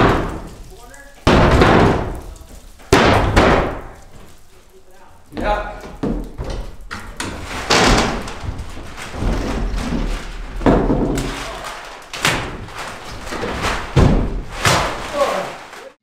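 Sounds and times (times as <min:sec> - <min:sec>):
wood thuds and bangs: 0:00.0 - 0:04.4, 0:05.3 - 0:15.7.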